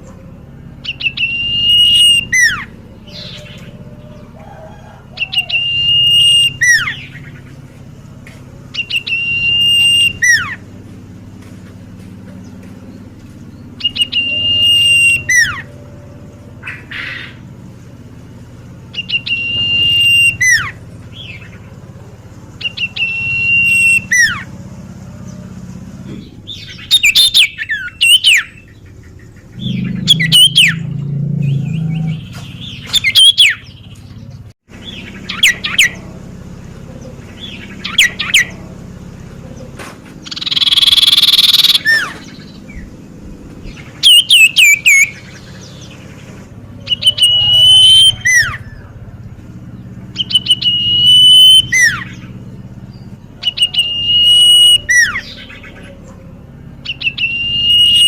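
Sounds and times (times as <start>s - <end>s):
bird whistling song: 0.8s - 7.6s, 8.7s - 10.7s, 12.4s - 15.8s, 18.9s - 21.6s, 22.6s - 24.5s, 26.1s - 34.0s, 34.8s - 36.0s, 37.0s - 38.6s, 39.5s - 43.0s, 43.7s - 46.2s, 46.8s - 49.0s, 50.1s - 56.2s, 56.8s - 58.0s
harsh rasping bird call: 0.8s - 7.7s, 13.7s - 18.2s, 34.7s - 43.0s, 46.8s - 49.1s, 53.3s - 58.0s.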